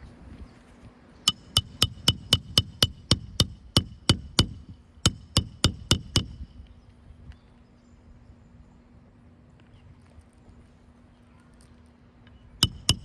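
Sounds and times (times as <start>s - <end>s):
hammer striking roofing nails: 1.3s - 6.4s, 12.6s - 13.0s.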